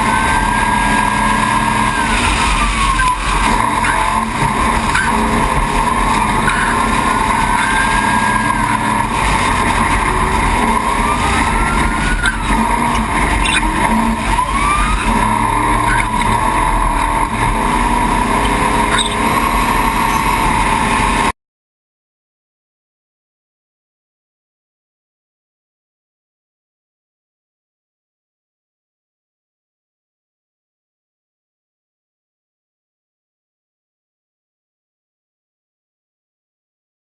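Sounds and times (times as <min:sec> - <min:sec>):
race truck engine roar: 0:00.0 - 0:21.4.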